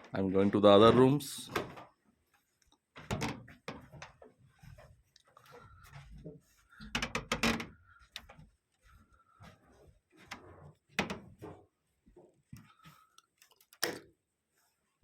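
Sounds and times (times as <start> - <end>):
knocks and clatter indoors: 0.0 - 2.0, 2.9 - 8.6, 9.4 - 12.7.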